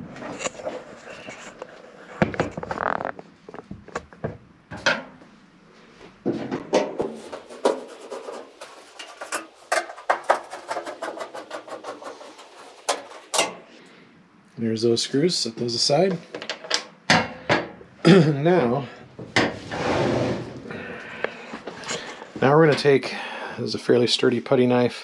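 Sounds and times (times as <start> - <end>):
metal clicks and scrapes: 6.7 - 13.8.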